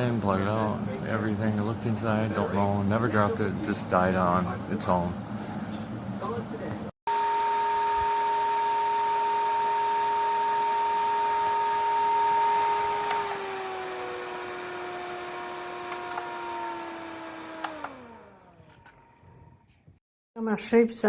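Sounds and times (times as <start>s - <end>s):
small electric motor whining: 7.1s - 19.3s.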